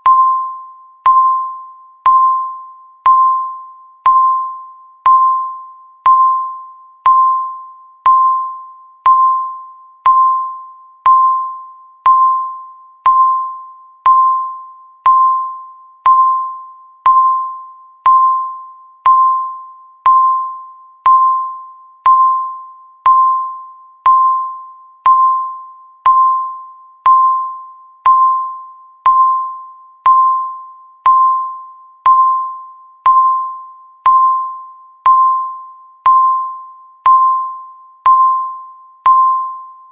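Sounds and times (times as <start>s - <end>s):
timer beeping: 0.0s - 39.9s.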